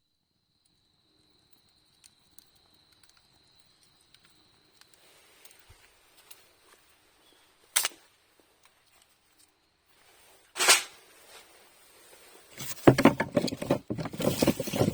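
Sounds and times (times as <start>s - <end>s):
campfire crackling: 1.3s - 7.1s.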